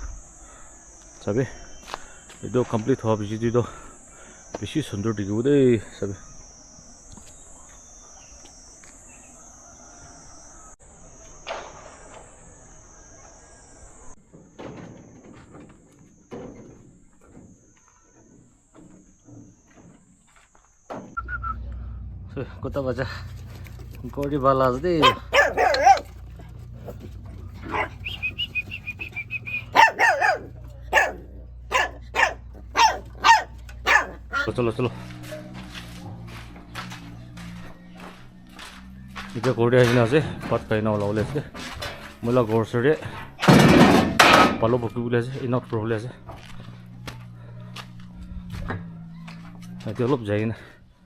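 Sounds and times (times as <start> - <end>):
high-pitched insect chorus: 0.0 - 14.2
dog barking: 25.0 - 34.5
high chirps: 27.6 - 34.5.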